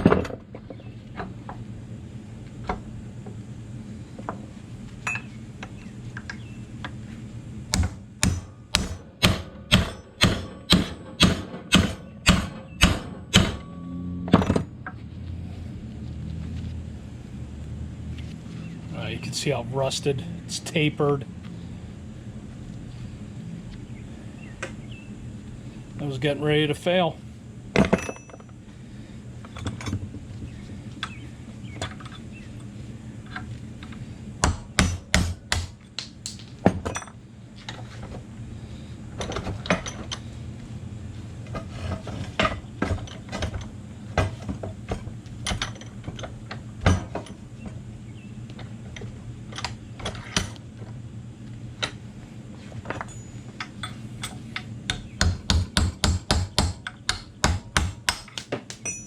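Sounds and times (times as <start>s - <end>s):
steady low hum: 0.0s - 27.8s, 54.8s - 59.0s
hammer striking metal: 7.8s - 14.0s, 34.4s - 36.7s, 55.2s - 59.0s.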